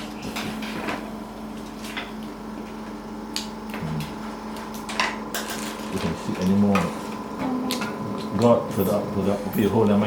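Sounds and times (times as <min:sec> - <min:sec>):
electrical equipment hum: 0:00.0 - 0:10.0.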